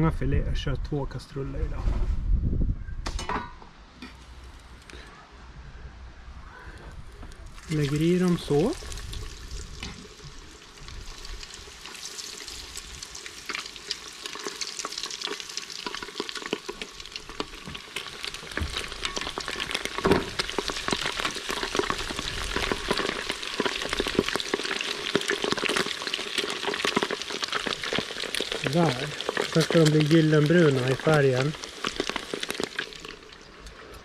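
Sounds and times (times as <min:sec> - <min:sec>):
fish deep-frying in oil: 0:07.4 - 0:34.0.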